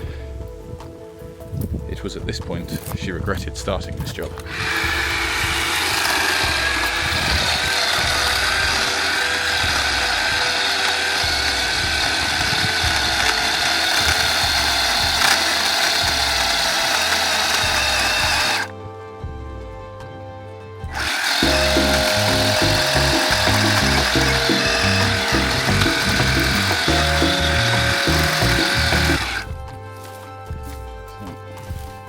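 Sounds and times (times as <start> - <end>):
elevator music: 4.2 - 19.8, 20.8 - 29.7
chainsaw cutting wood: 4.4 - 18.7, 20.9 - 29.5.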